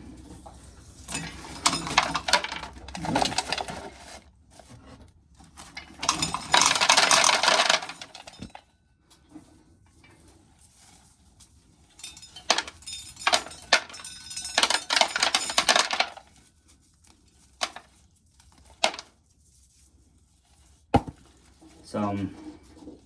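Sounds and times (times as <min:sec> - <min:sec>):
corn kernels rattling: 0:06.0 - 0:08.5.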